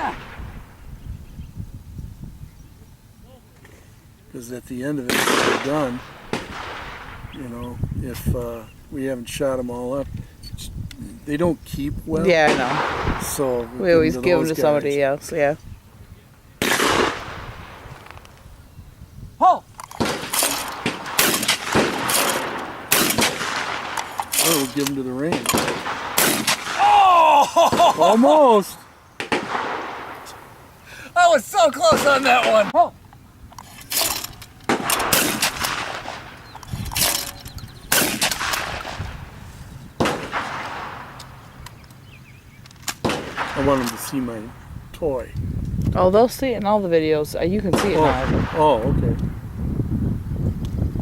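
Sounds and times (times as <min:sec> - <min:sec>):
person shouting: 0:00.0 - 0:00.2, 0:19.4 - 0:19.7, 0:26.8 - 0:28.6, 0:31.0 - 0:32.9
shotgun shots with echo: 0:05.0 - 0:07.7, 0:12.4 - 0:13.8, 0:16.6 - 0:18.2, 0:20.0 - 0:26.9, 0:29.2 - 0:30.6, 0:34.7 - 0:39.2, 0:40.0 - 0:41.4, 0:43.0 - 0:44.6, 0:47.7 - 0:48.9.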